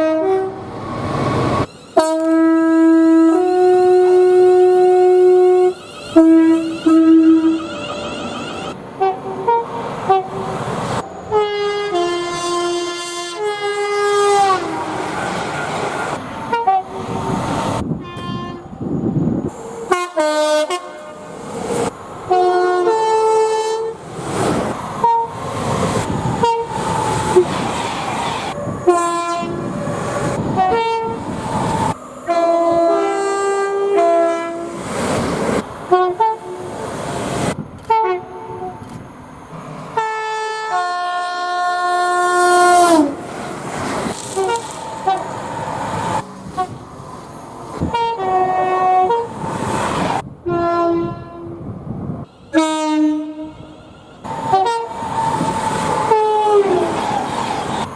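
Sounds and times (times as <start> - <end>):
train horn blasts: 0.0 - 0.6, 1.7 - 10.4, 11.3 - 15.0, 16.5 - 17.0, 18.0 - 18.8, 19.9 - 21.3, 22.3 - 24.0, 25.0 - 25.4, 26.4 - 27.5, 28.9 - 29.6, 30.6 - 31.2, 32.2 - 34.8, 35.9 - 36.7, 37.9 - 38.9, 39.9 - 43.3, 44.3 - 45.3, 46.5 - 46.8, 47.8 - 49.4, 50.4 - 51.6, 52.2 - 55.0, 56.0 - 56.9
trains running: 0.0 - 57.9.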